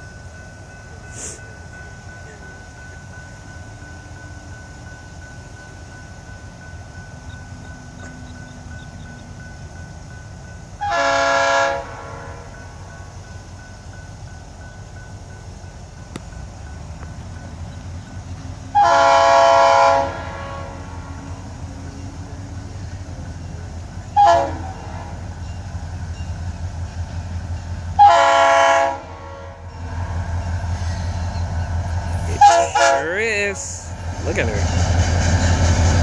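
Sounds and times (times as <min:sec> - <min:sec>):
train low rumble: 0:00.0 - 0:36.0
locomotive air horn blasts: 0:10.8 - 0:12.6, 0:18.7 - 0:21.4, 0:24.2 - 0:25.2, 0:28.0 - 0:29.7, 0:32.3 - 0:33.0.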